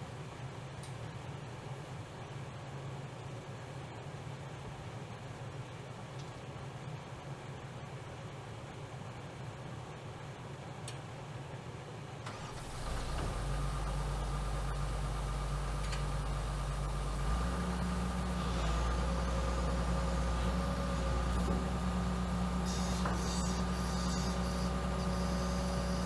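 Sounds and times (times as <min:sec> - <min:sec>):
excavator diesel engine running: 0:12.3 - 0:26.0.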